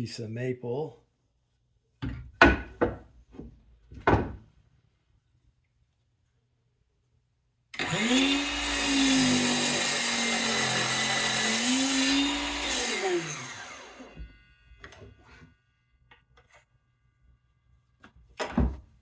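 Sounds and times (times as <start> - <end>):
miter saw cutting wood: 7.8 - 14.4
saw blade winding down: 7.8 - 14.4.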